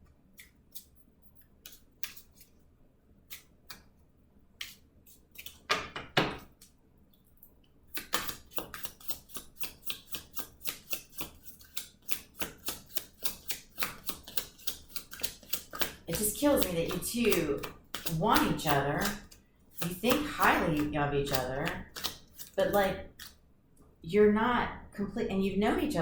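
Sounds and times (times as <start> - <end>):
rustle of cards: 1.6 - 2.6
fast card slaps: 8.0 - 17.0.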